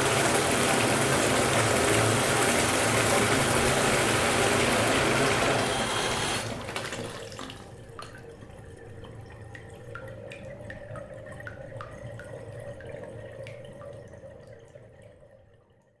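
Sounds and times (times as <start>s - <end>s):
bath tap running: 0.0s - 8.8s
water drips plinking into bathtub: 6.7s - 14.7s.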